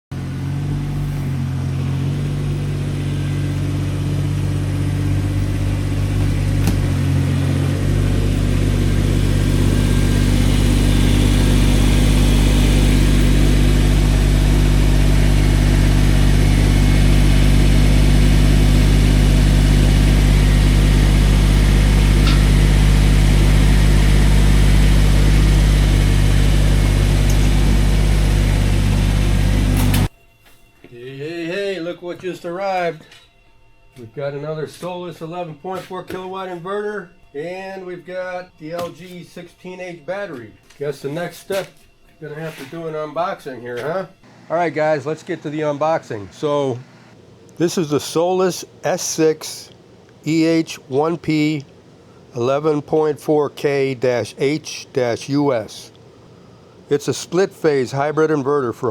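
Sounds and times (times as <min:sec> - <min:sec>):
vehicle engine running: 0:00.0 - 0:30.1, 0:44.2 - 0:58.9.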